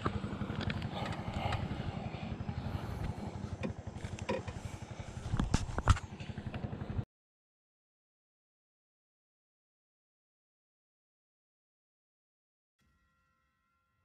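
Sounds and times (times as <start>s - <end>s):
small engine running: 0.0s - 7.0s.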